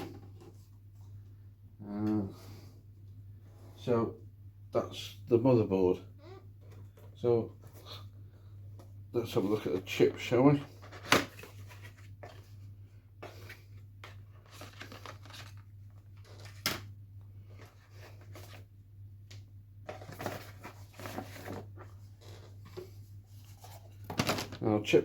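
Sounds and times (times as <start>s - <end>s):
low steady hum: 0.0s - 25.0s
packaging rustling and crinkling: 13.3s - 16.9s, 19.9s - 24.6s.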